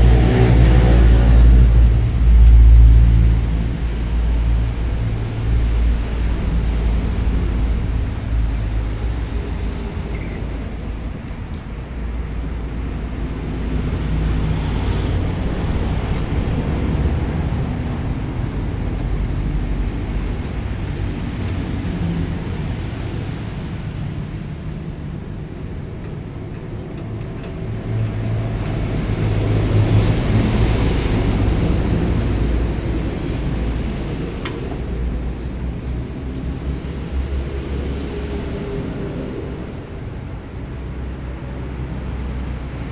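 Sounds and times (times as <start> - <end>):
diesel truck engine revving: 0.0 - 4.8.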